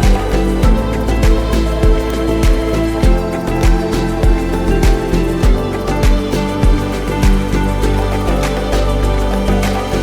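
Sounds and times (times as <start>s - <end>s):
background music with steady beat: 0.0s - 10.0s.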